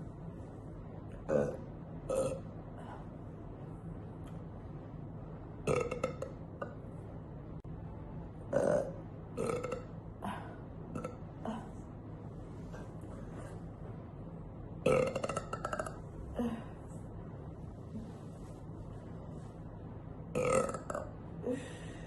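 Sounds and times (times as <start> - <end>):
steady low hum: 0.0 - 22.0
woman burping: 1.2 - 2.5, 5.7 - 6.8, 8.5 - 11.8, 14.8 - 16.8, 20.4 - 21.7.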